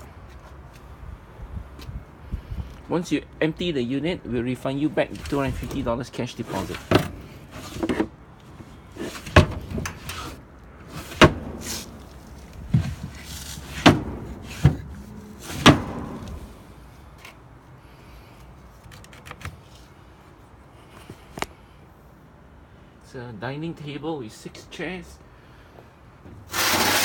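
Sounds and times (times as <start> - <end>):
sharp knocks and bangs: 11.2 - 12.0, 12.7 - 16.6.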